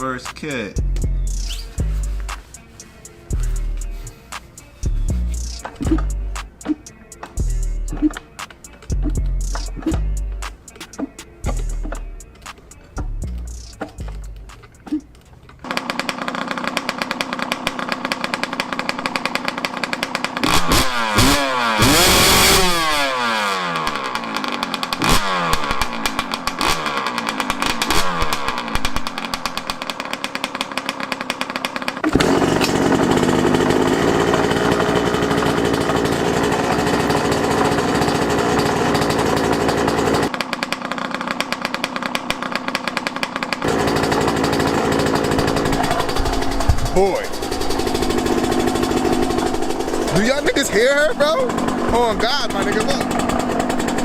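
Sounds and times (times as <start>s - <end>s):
two-stroke motorcycle engine revving: 0.0s - 54.0s.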